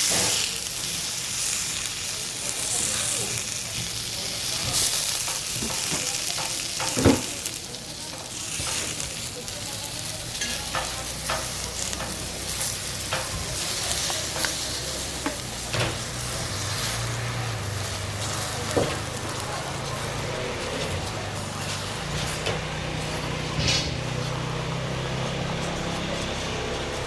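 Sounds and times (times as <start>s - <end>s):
pancakes sizzling in oil: 0.0s - 27.0s
utensils scraping pan: 22.1s - 24.4s.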